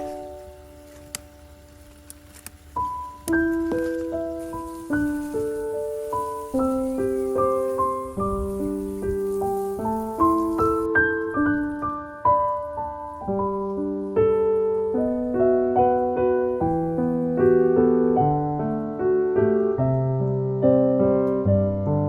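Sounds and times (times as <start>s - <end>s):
gentle piano music: 0.0s - 22.0s.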